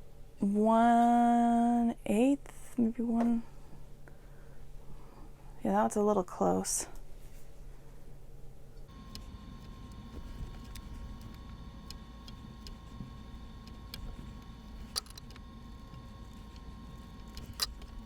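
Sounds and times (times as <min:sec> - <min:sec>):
steady low hum: 0:07.0 - 0:18.0.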